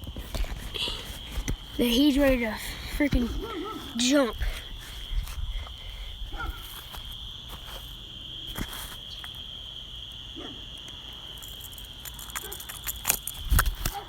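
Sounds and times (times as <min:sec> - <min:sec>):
fish handling clicks and rustles: 0:00.0 - 0:05.8, 0:11.4 - 0:14.0
crickets chirring: 0:00.0 - 0:14.0.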